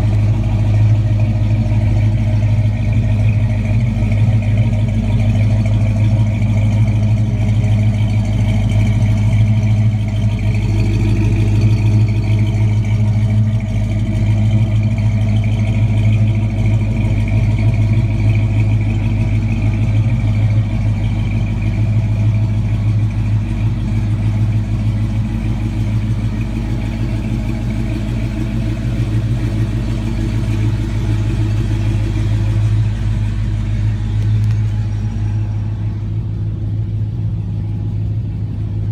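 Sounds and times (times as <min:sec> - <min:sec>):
engine droning: 0:00.0 - 0:38.9.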